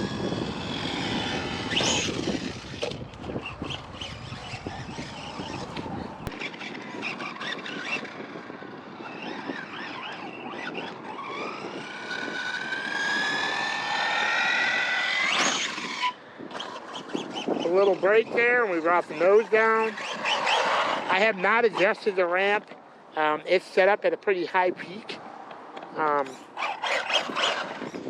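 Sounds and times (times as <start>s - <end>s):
electric motor whining: 0.0s - 22.3s, 25.8s - 28.0s.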